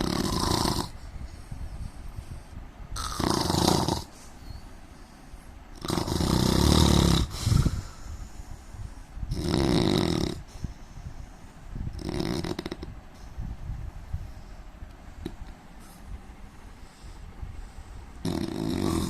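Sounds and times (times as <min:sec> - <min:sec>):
man snoring: 0:00.0 - 0:01.0, 0:03.0 - 0:04.2, 0:05.7 - 0:07.8, 0:09.3 - 0:10.5, 0:12.0 - 0:12.9, 0:18.2 - 0:19.0.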